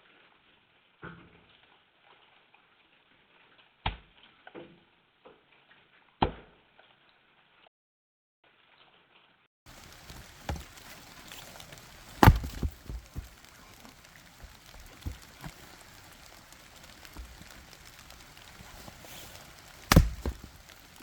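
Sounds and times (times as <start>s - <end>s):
axe chopping firewood: 9.8s - 21.0s
light knocks of wood: 9.8s - 21.0s.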